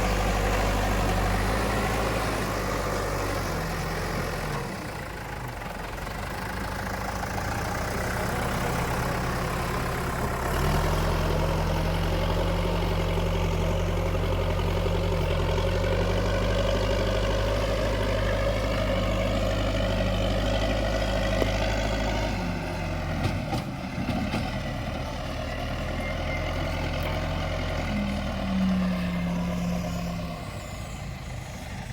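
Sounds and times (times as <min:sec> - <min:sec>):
diesel engine running: 0:00.0 - 0:31.9.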